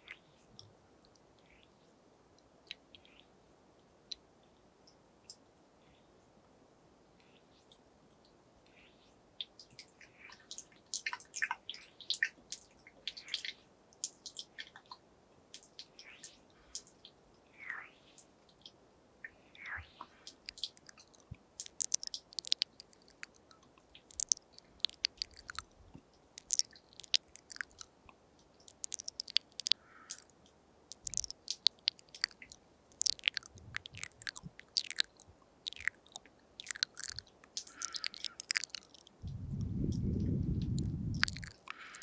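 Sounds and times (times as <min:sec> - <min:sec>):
tongue and lip clicks: 0:20.1 - 0:42.0.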